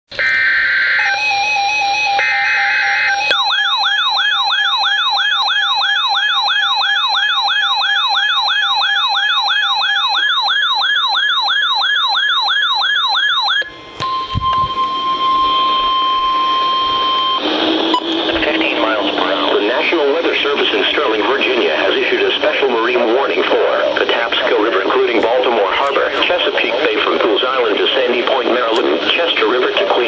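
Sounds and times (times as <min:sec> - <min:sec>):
whooping siren alarm: 0:00.1 - 0:21.8
steady warning tone: 0:00.1 - 0:30.0
rapid beeping: 0:00.4 - 0:30.0.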